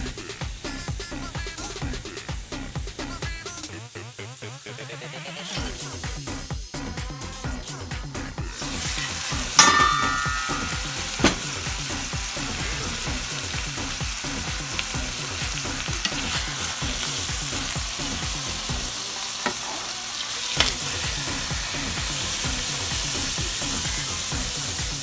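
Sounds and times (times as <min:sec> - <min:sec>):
food sizzling in oil: 0:00.0 - 0:25.0
utensil striking pan: 0:08.6 - 0:18.7, 0:19.4 - 0:19.8, 0:20.6 - 0:23.5.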